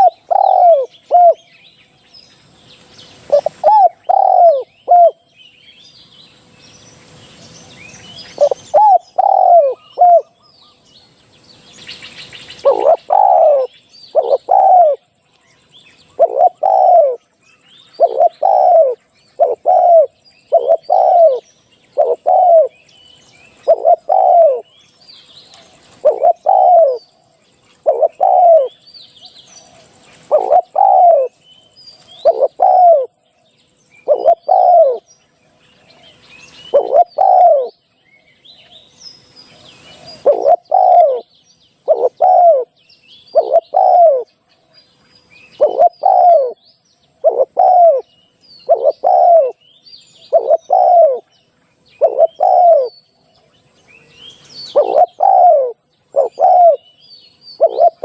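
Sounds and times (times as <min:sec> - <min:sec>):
dove cooing: 0:00.0 - 0:01.5, 0:03.3 - 0:05.3, 0:08.3 - 0:10.4, 0:12.5 - 0:15.1, 0:16.1 - 0:17.2, 0:17.9 - 0:22.8, 0:23.5 - 0:24.8, 0:25.8 - 0:27.1, 0:27.8 - 0:28.8, 0:30.2 - 0:31.4, 0:32.2 - 0:33.2, 0:34.0 - 0:35.1, 0:36.6 - 0:37.8, 0:39.9 - 0:44.3, 0:45.6 - 0:46.6, 0:47.2 - 0:49.6, 0:50.3 - 0:51.3, 0:52.0 - 0:52.9, 0:54.5 - 0:56.8, 0:57.6 - 0:58.0
small birds chirping: 0:00.0 - 0:58.0.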